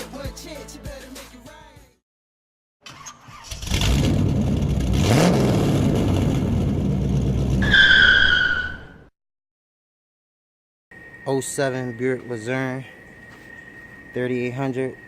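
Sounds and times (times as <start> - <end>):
car engine starting and revving: 2.9 - 8.0
high squeal: 7.6 - 9.1, 10.9 - 15.0.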